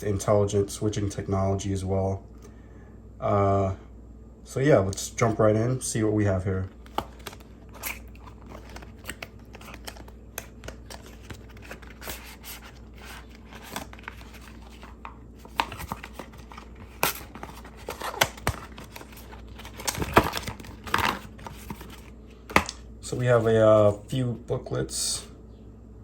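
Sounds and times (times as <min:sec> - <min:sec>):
cardboard and paper rustling: 0:06.7 - 0:23.9.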